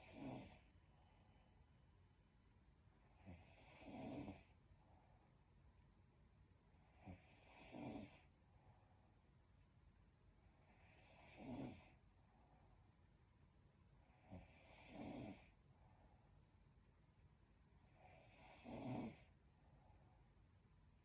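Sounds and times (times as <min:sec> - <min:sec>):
woman snoring softly: 0:00.0 - 0:00.7, 0:03.0 - 0:04.6, 0:06.8 - 0:08.3, 0:10.5 - 0:12.0, 0:14.0 - 0:15.6, 0:17.8 - 0:19.4.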